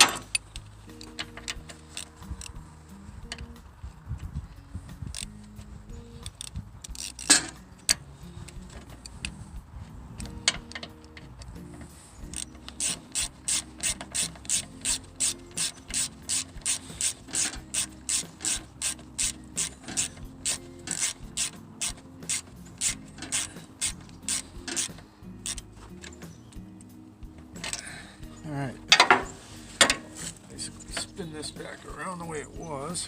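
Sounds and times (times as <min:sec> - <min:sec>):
ratchet wrench clicking: 0:00.0 - 0:02.6, 0:05.0 - 0:09.4, 0:10.2 - 0:26.6, 0:27.6 - 0:27.9.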